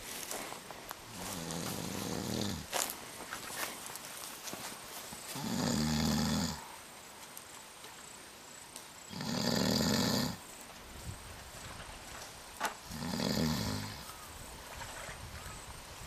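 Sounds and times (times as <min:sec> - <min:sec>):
heavy snoring: 0:01.1 - 0:02.7, 0:05.4 - 0:06.7, 0:09.1 - 0:10.4, 0:12.8 - 0:14.0.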